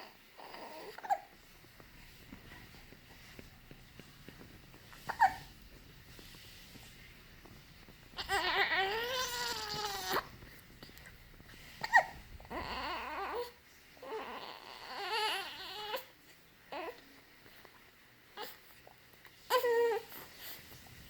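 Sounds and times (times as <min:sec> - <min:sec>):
baby crying and fussing: 0:05.1 - 0:05.5, 0:08.2 - 0:10.3, 0:11.8 - 0:16.1.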